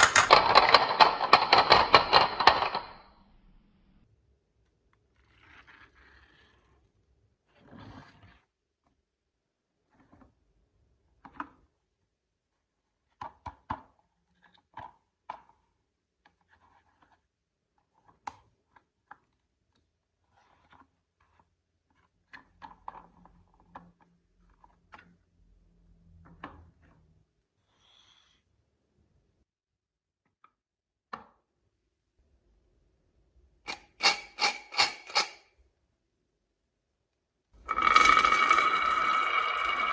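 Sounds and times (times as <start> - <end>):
marbles clacking in wooden run: 0.0 - 3.0, 37.6 - 39.9.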